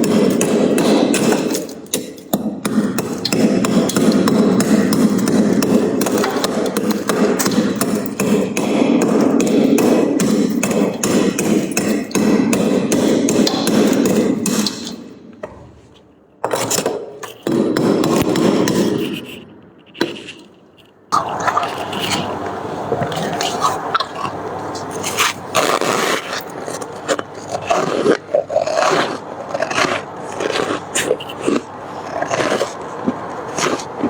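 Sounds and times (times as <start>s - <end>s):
frost ice crunching: 16.4s - 34.0s.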